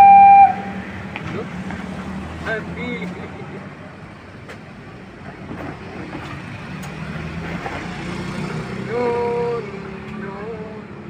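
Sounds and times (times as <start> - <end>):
short loud pitched tone: 0.0 - 0.8
vehicle engines passing: 0.0 - 11.0.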